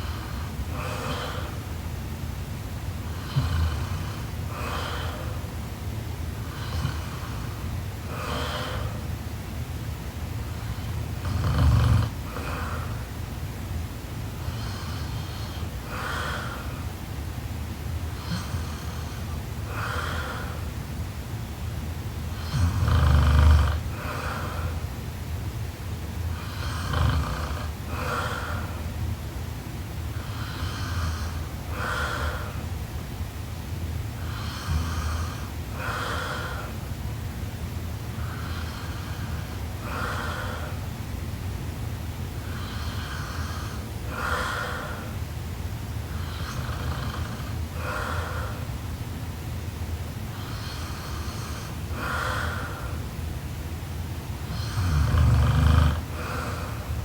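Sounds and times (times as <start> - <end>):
woman snoring: 3.0 - 5.4, 6.4 - 9.0, 10.6 - 13.0, 18.2 - 20.6, 22.3 - 24.8, 26.3 - 28.8, 30.1 - 32.6, 34.2 - 36.8, 38.2 - 40.8, 42.4 - 45.2, 46.1 - 48.7, 50.3 - 53.0, 54.4 - 57.0.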